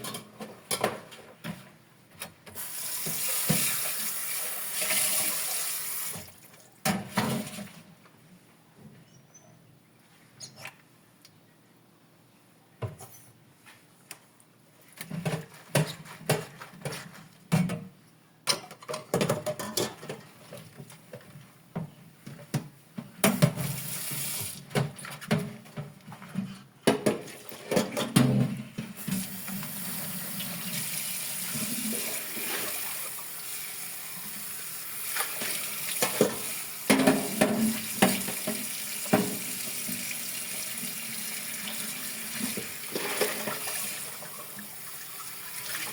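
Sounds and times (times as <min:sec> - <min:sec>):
dishes clinking in a sink: 0:00.0 - 0:01.2, 0:18.5 - 0:20.3, 0:36.0 - 0:39.4
tap running into sink: 0:35.4 - 0:40.1.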